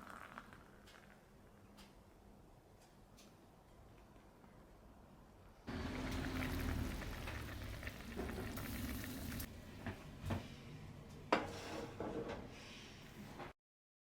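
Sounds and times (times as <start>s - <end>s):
pot of food bubbling: 0.0s - 1.3s, 5.7s - 9.5s
small crackles: 5.7s - 9.5s.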